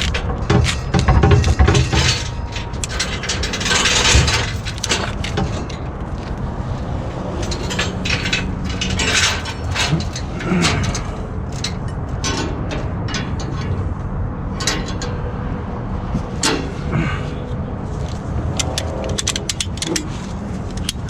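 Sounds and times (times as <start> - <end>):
chains clinking: 0.0 - 13.8
chains rattling scrapes: 0.0 - 15.4
steady low hum: 0.0 - 21.0.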